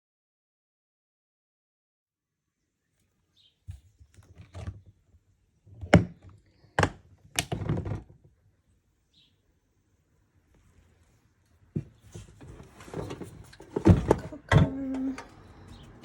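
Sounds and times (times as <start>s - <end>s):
camping gear clunking: 5.8s - 8.3s, 11.7s - 16.0s
rustling: 9.7s - 15.2s.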